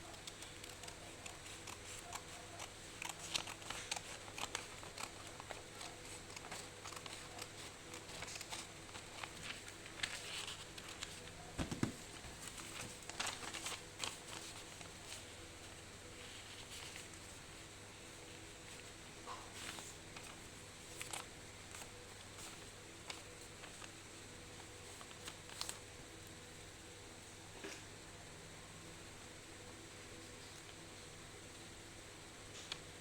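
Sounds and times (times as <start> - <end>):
paper rustling and crinkling: 0.0 - 26.3.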